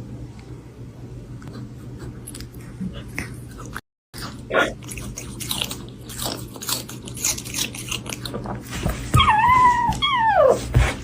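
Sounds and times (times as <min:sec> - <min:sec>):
crunchy chewing of food: 0:01.8 - 0:09.1.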